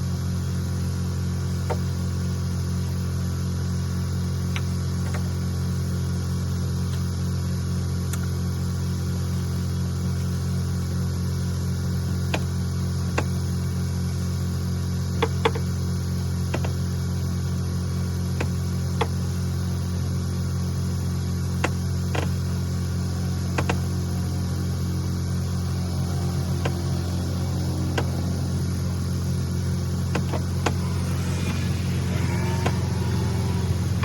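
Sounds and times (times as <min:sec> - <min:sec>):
low mechanical hum: 0:00.0 - 0:34.0.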